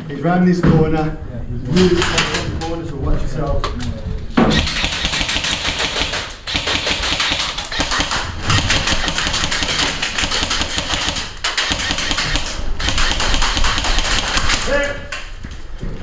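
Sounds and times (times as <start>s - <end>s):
airsoft guns firing: 4.4s - 14.9s.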